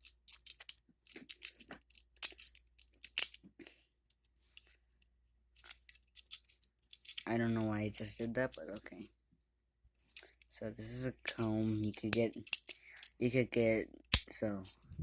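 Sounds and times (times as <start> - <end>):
comb scratchy strokes and clicks: 0.0 - 4.8.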